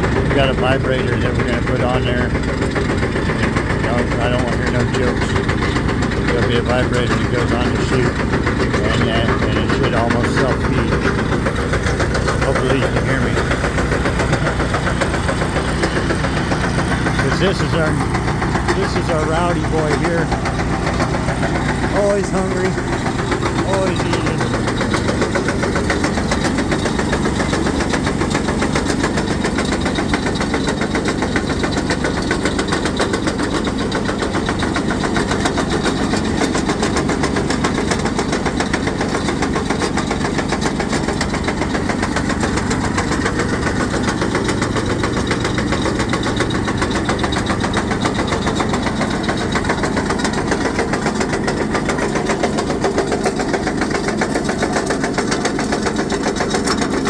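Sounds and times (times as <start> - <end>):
steady low hum: 0.0 - 56.9
rock crusher clattering: 0.0 - 57.0.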